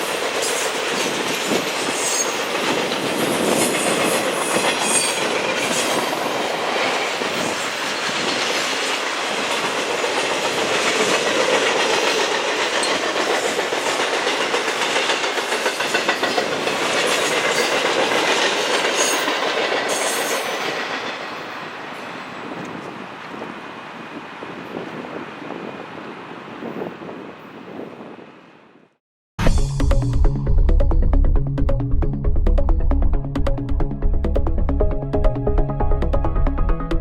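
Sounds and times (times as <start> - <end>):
train wheels clacking over rail joints: 0.0 - 21.5.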